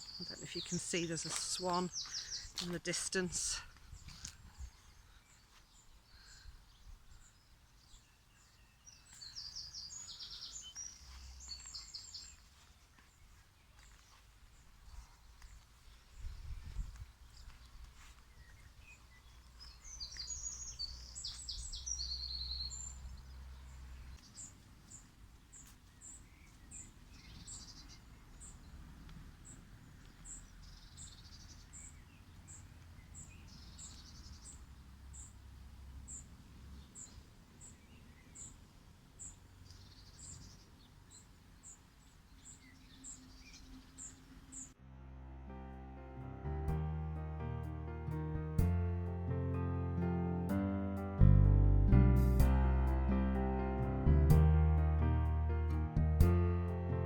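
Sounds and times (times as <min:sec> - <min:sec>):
high bird chirps: 0:19.6 - 0:23.0
low background rumble: 0:51.0 - 0:57.0.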